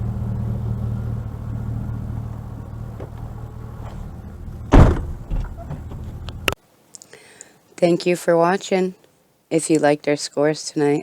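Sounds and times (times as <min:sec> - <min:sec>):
car engine and road rumble: 0:00.0 - 0:06.6
loud sudden thump: 0:04.7 - 0:06.0.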